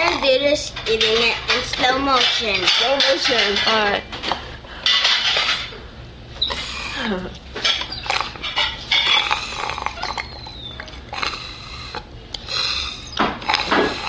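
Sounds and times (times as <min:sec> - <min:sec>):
dishes and cutlery clinking: 0:00.0 - 0:05.8, 0:07.6 - 0:09.4
low background hum: 0:00.0 - 0:14.0.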